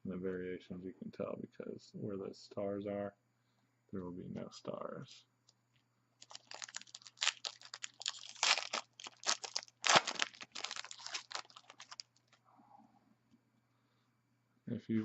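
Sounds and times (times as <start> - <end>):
foil wrapper crinkling and tearing: 6.2 - 12.4.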